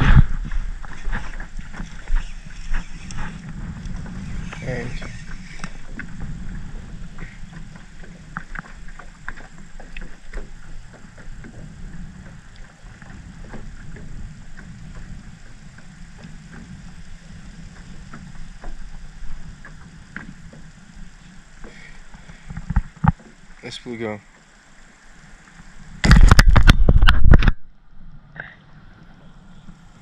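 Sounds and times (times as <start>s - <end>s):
low rumble: 0.0s - 21.6s
light knocks in a boat: 0.1s - 17.0s, 21.6s - 23.4s.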